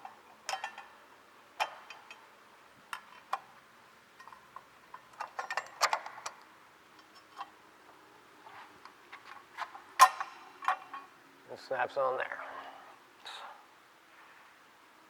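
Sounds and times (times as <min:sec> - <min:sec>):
metal parts clicking and clinking: 0:00.0 - 0:01.0, 0:04.2 - 0:06.3.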